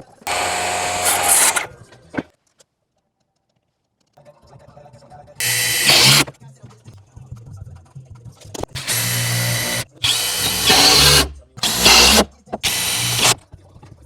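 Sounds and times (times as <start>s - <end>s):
power drill bursts: 0.0s - 1.8s, 5.4s - 6.3s, 8.6s - 13.4s.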